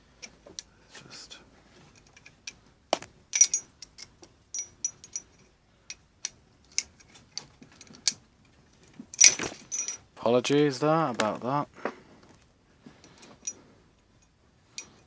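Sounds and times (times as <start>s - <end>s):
metallic clicks of revolver parts: 2.0s - 8.2s, 14.2s - 15.0s
metal parts clattering: 3.3s - 5.4s, 9.1s - 10.1s.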